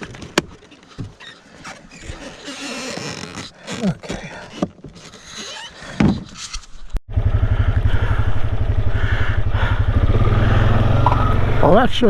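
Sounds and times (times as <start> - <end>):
vehicle engine starting and idling: 7.1 - 12.0.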